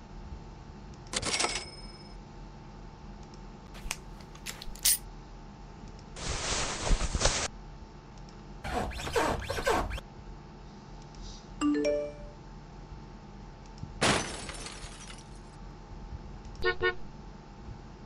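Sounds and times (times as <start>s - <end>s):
bell-like ringing chime: 11.6s - 12.4s.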